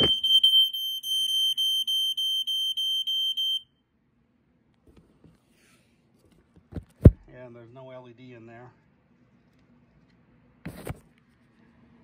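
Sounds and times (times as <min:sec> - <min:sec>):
smoke alarm pulsing shrill tone: 0:00.0 - 0:03.7.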